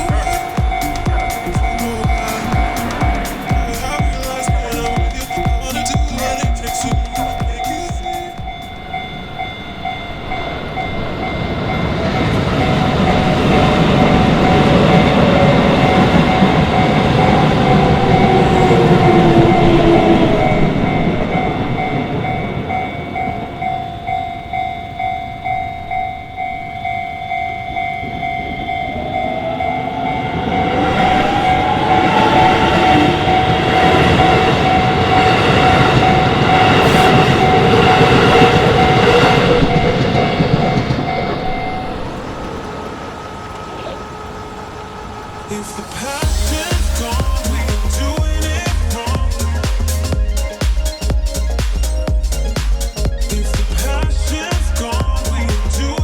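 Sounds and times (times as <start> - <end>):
train motor whine: 0.0 - 24.5, 29.1 - 48.4
crossing warning bell ringing: 0.0 - 49.8
electric trains passing: 0.0 - 50.5.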